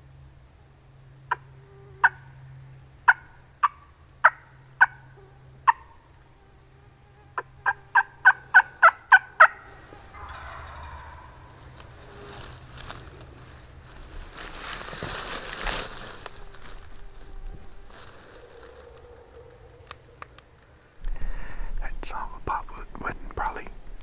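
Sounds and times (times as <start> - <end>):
turkey yelping: 3.1 - 6.0, 7.4 - 12.4.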